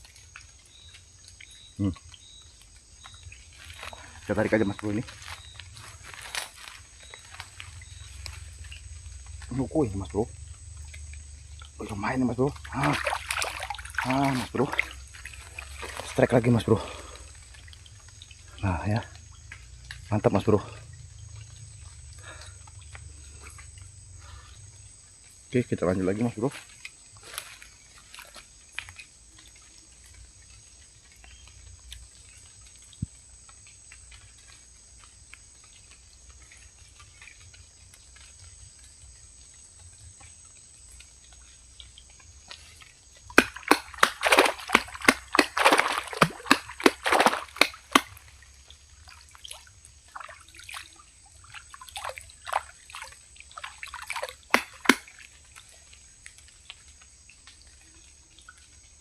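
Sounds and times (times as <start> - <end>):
water splashing: 0.0 - 24.4, 40.2 - 59.0
water dripping: 0.0 - 59.0.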